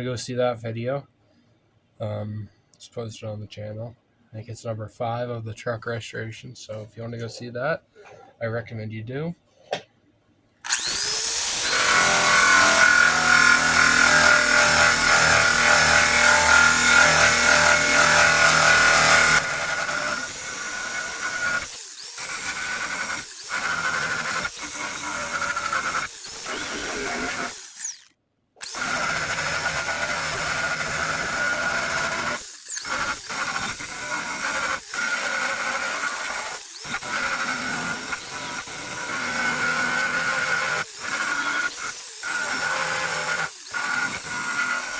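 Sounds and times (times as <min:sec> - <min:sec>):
drill wire wheel scrubbing steel: 0:10.7 - 0:44.9.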